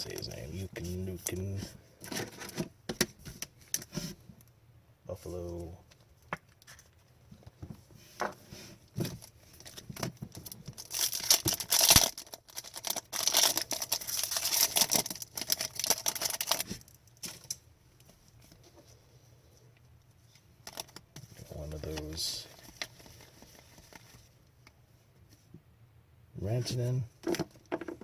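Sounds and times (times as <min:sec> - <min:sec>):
foil wrapper crinkling and tearing: 0:09.2 - 0:17.6.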